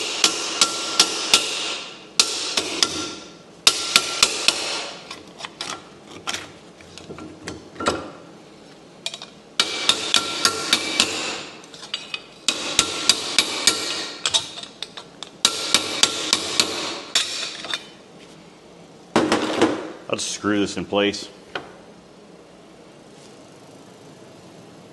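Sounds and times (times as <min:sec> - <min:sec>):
hammer striking sheet steel: 0:00.0 - 0:05.0, 0:09.6 - 0:11.6, 0:12.5 - 0:14.6, 0:15.4 - 0:17.9.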